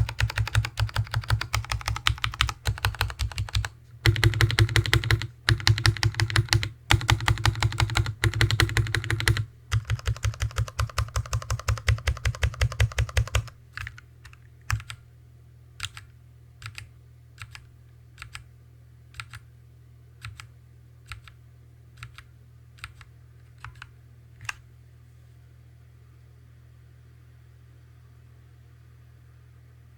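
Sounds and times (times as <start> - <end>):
mechanical keyboard typing: 0.0 - 15.0, 15.8 - 18.5, 19.2 - 19.4, 20.2 - 21.4, 22.0 - 24.6.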